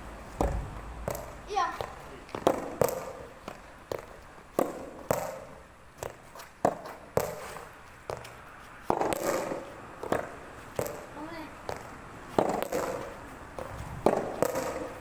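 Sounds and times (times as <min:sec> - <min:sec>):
rackets striking tennis balls: 0:00.2 - 0:15.0
tennis balls bouncing on court: 0:00.3 - 0:15.0.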